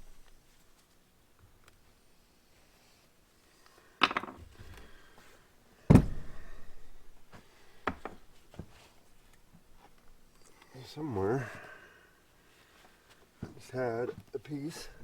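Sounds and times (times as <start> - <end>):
loud knocks and heavy thud: 5.9 - 6.4.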